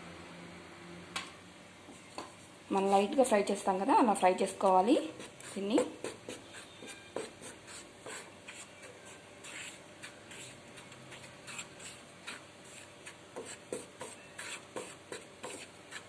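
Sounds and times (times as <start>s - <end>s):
spatula scraping flour in a pan: 4.6s - 16.0s.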